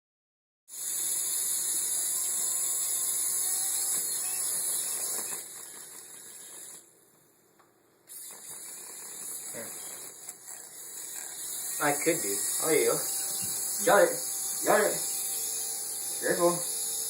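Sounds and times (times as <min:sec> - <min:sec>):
toy helicopter motor whirring: 0:00.7 - 0:06.9, 0:08.1 - 0:17.0.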